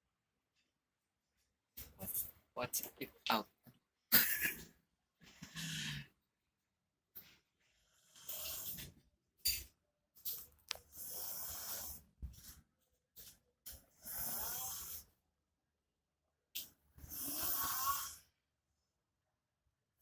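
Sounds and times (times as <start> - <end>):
man snoring loudly: 14.0 - 15.0, 17.0 - 18.2.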